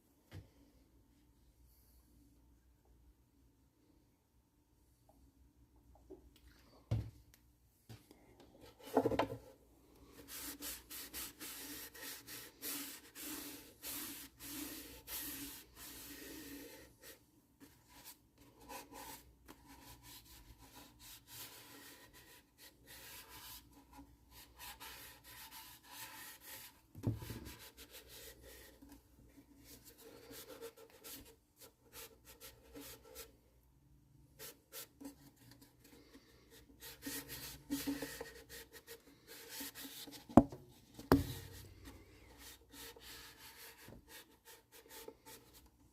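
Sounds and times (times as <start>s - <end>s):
rubbing strokes on wood: 10.2s - 17.2s.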